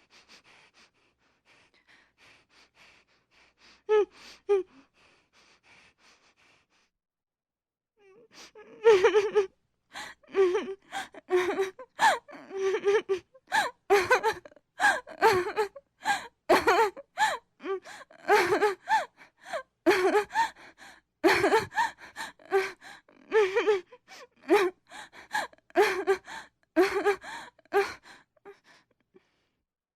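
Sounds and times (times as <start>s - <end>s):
woman sobbing: 8.4s - 28.2s.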